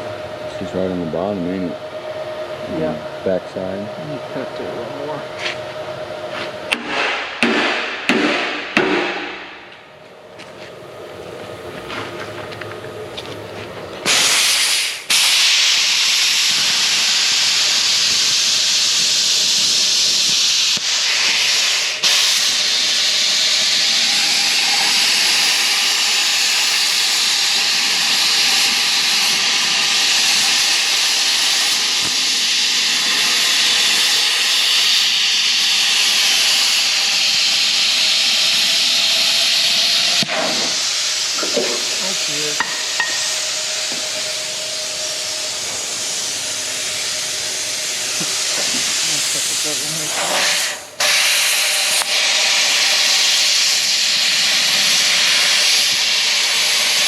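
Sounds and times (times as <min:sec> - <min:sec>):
cutting torch hissing: 0:13.0 - 0:57.0.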